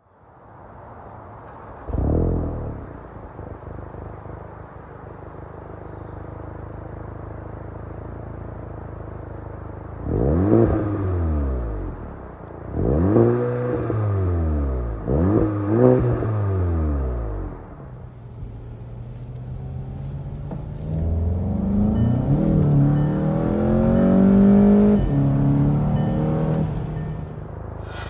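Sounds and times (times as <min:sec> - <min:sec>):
car engine starting and revving: 0:01.4 - 0:03.7, 0:09.8 - 0:28.0.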